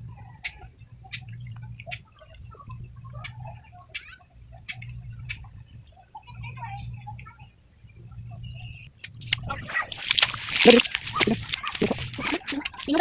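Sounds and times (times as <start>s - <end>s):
water dripping and splashing: 9.0s - 13.0s.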